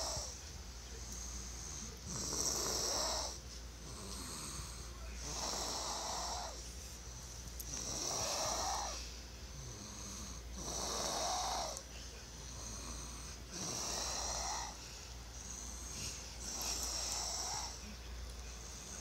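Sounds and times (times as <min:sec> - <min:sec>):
child snoring loudly: 0:00.0 - 0:00.4, 0:01.8 - 0:06.6, 0:07.7 - 0:09.0, 0:09.6 - 0:11.8, 0:12.5 - 0:14.8, 0:15.8 - 0:17.8.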